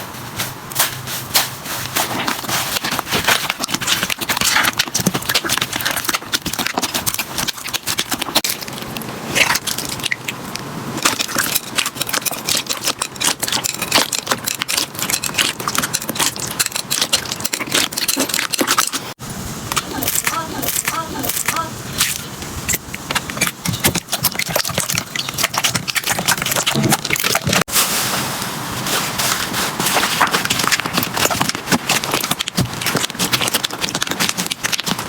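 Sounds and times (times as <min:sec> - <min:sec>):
slime crackling and popping: 0:29.2 - 0:35.0.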